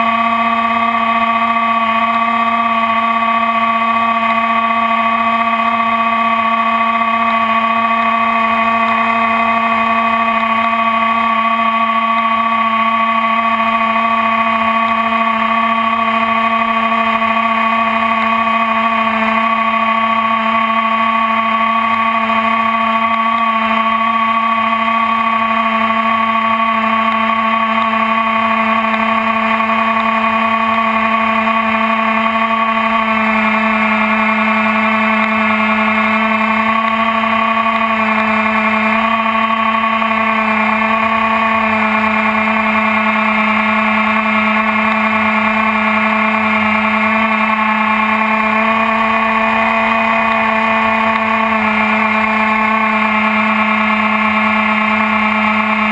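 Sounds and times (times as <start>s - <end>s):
electric motor and propeller whine: 0.0s - 55.9s.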